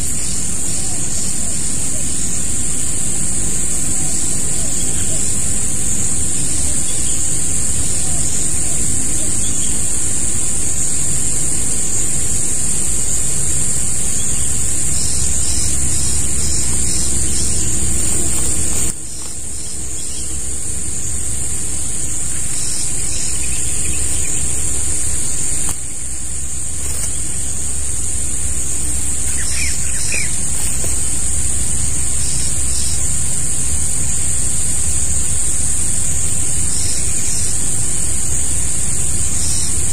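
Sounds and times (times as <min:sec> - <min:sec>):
steady high-pitched hiss: 0:00.0 - 0:39.9
faint bird chirps: 0:28.8 - 0:31.0.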